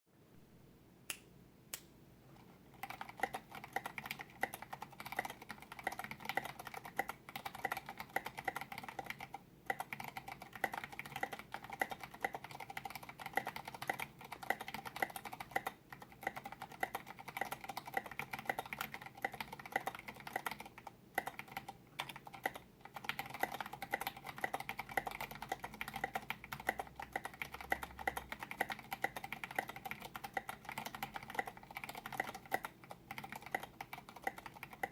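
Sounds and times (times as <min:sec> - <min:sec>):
mechanical keyboard typing: 0:02.7 - 0:34.9.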